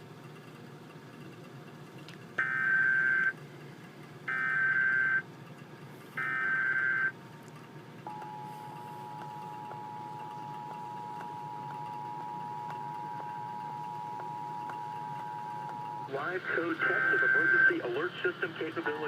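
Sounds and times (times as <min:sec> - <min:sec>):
two-tone attention signal: 0:02.4 - 0:03.3, 0:04.3 - 0:05.2, 0:06.2 - 0:07.2, 0:08.1 - 0:17.8
digital data tone bursts: 0:02.4 - 0:03.4, 0:04.3 - 0:05.3, 0:06.2 - 0:07.2, 0:08.1 - 0:18.7.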